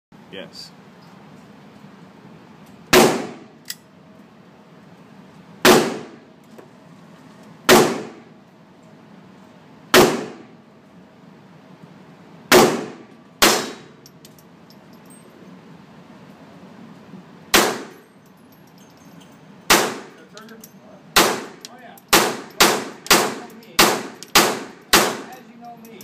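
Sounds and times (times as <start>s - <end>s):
pistol shots: 2.9s - 3.5s, 5.6s - 6.2s, 7.7s - 8.2s, 9.9s - 10.5s, 12.5s - 14.0s, 17.5s - 18.0s, 19.7s - 20.2s, 21.2s - 25.3s.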